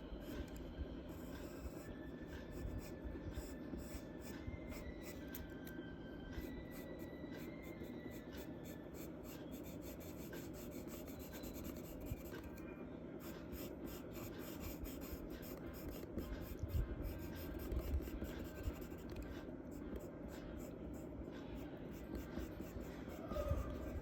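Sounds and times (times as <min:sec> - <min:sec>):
charcoal scratching on paper: 0:06.4 - 0:12.6, 0:13.2 - 0:24.0.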